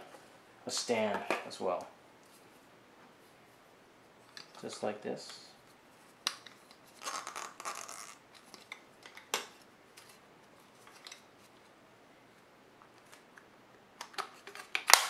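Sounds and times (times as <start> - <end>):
hard plastic clicking and rustling: 14.0 - 15.0.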